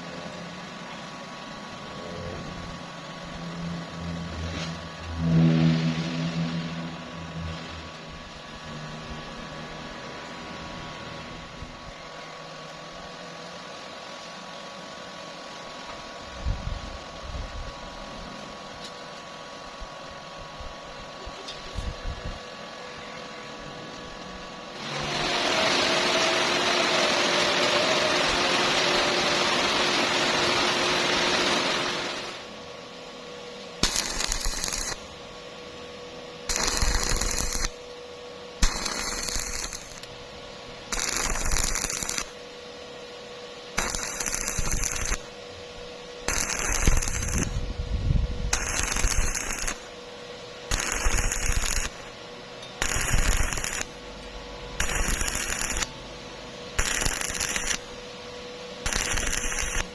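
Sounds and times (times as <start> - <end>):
steady machine noise: 0.0 - 12.2, 22.1 - 59.9
welding arc crackling: 24.7 - 32.5, 33.8 - 35.3, 36.5 - 37.9, 38.6 - 40.2, 40.8 - 42.4, 43.7 - 45.4, 46.2 - 47.7, 48.5 - 50.0, 50.7 - 52.2, 52.8 - 54.0, 54.8 - 55.9, 56.7 - 58.0, 58.8 - 59.9
faint steady hum: 32.2 - 59.9.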